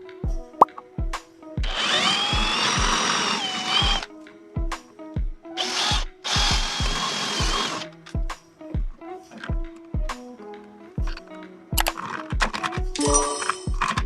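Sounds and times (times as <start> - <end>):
music with thumping beat: 0.0 - 3.2, 3.8 - 10.3, 11.0 - 14.0
power drill whining: 1.6 - 4.1, 5.6 - 7.9.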